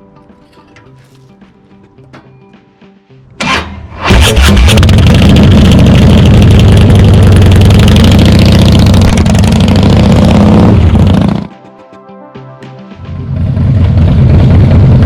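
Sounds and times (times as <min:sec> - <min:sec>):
motorcycle engine idling: 0:04.3 - 0:11.5, 0:13.1 - 0:15.0.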